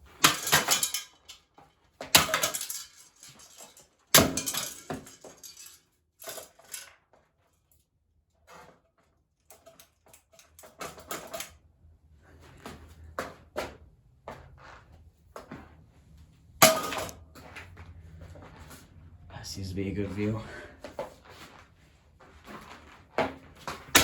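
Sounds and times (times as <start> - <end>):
loose parts rattling and clattering: 0.0 - 7.0, 9.4 - 11.6, 16.6 - 18.8
sledgehammer crashing on metal: 0.1 - 1.1, 4.2 - 5.3, 16.6 - 17.2, 23.8 - 24.0.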